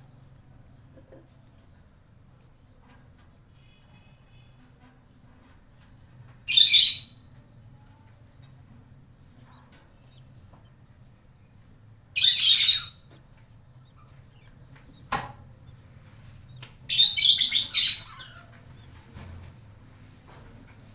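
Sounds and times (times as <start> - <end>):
budgerigar harsh calls: 6.5 - 7.2, 12.2 - 13.0, 16.9 - 18.5.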